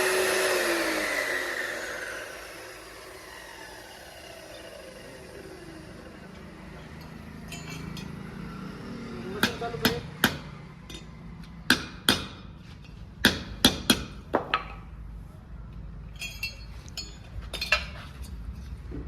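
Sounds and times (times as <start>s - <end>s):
ringing metallic clink: 7.0s - 8.2s, 16.2s - 17.9s
hammer striking metal: 9.4s - 11.1s, 11.7s - 12.5s, 13.2s - 14.7s.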